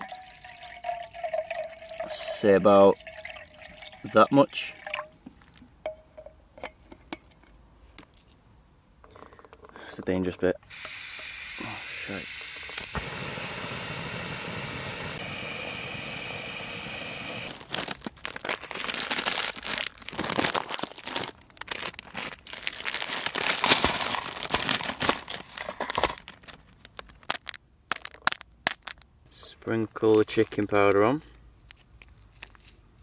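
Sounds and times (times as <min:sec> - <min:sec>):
gas stove burner hissing: 0:10.6 - 0:17.6
plastic packet crinkling and tearing: 0:17.5 - 0:29.1, 0:31.7 - 0:33.0.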